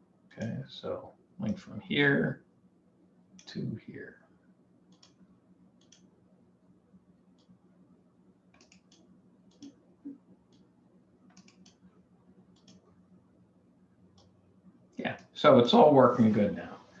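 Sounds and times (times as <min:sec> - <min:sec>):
faint steady hum: 0:00.0 - 0:17.0
computer mouse clicking: 0:04.9 - 0:05.2, 0:05.8 - 0:06.1, 0:07.3 - 0:07.6, 0:08.5 - 0:11.9, 0:12.5 - 0:12.9.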